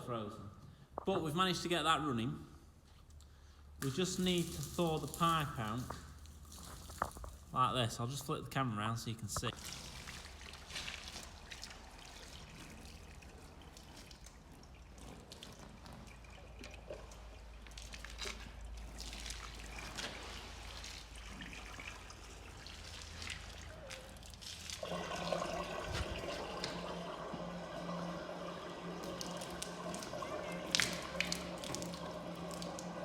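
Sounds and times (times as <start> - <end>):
water trickling and dripping: 3.2 - 8.3, 9.4 - 33.0.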